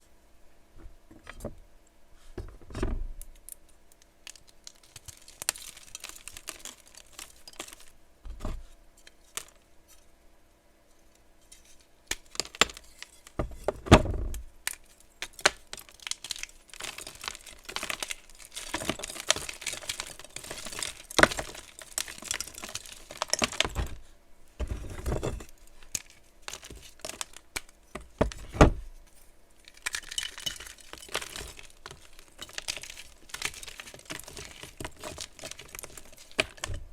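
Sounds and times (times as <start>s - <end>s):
chalk crunching and crackling: 4.3s - 8.0s, 14.7s - 24.1s, 24.7s - 36.7s.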